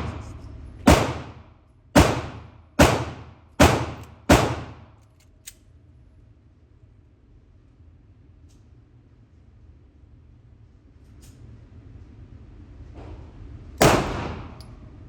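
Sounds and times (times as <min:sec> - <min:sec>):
echoing gunshots: 0:00.0 - 0:00.2, 0:00.9 - 0:04.9, 0:13.8 - 0:14.6.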